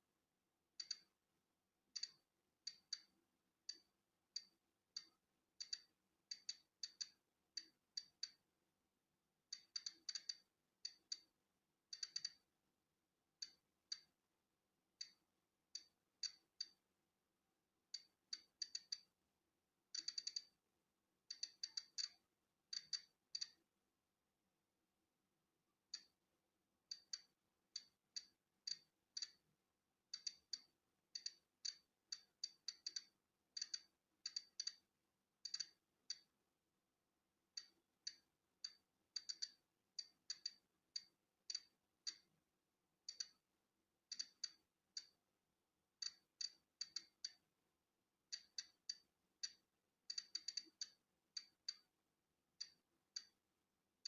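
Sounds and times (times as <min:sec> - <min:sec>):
geiger counter clicking: 0:00.8 - 0:01.1, 0:01.9 - 0:08.4, 0:09.6 - 0:11.3, 0:11.9 - 0:12.5, 0:13.4 - 0:14.1, 0:15.8 - 0:16.8, 0:18.0 - 0:19.1, 0:19.9 - 0:20.6, 0:21.3 - 0:23.6, 0:26.0 - 0:26.2, 0:26.9 - 0:29.4, 0:30.1 - 0:34.8, 0:35.4 - 0:36.3, 0:37.6 - 0:42.3, 0:43.1 - 0:43.4, 0:44.1 - 0:45.2, 0:46.0 - 0:47.4, 0:48.3 - 0:51.9, 0:52.6 - 0:53.4.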